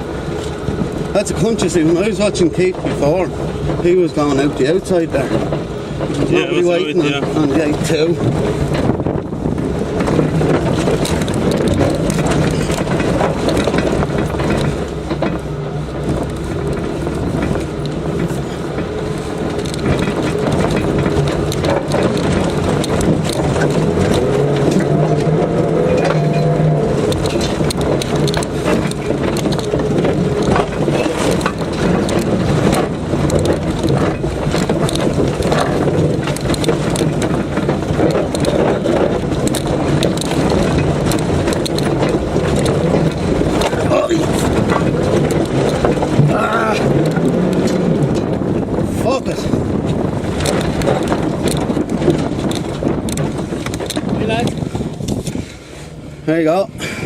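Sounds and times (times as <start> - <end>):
off-road engine under load: 0.0 - 57.0
vehicle clunks and rattles: 0.0 - 57.0.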